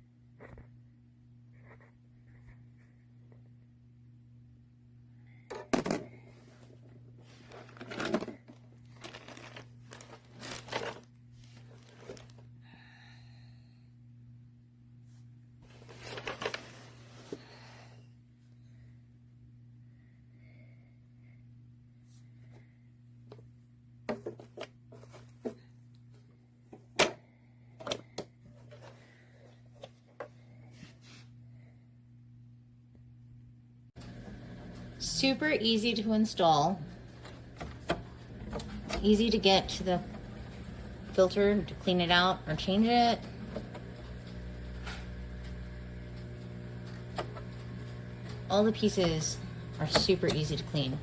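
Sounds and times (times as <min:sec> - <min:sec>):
steady low hum: 0:00.0 - 0:51.0
crinkling rustling handling noise: 0:06.4 - 0:12.5, 0:15.6 - 0:17.5.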